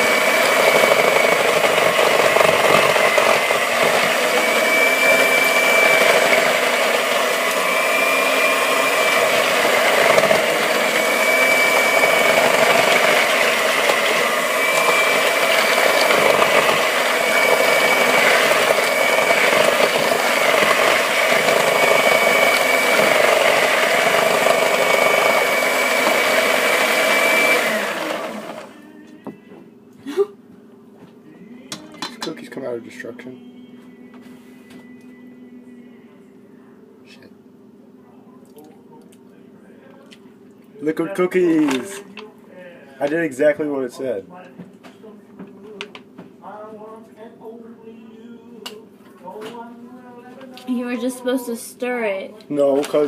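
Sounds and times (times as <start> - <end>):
electric mixer running: 0.0 - 29.0, 40.8 - 42.0.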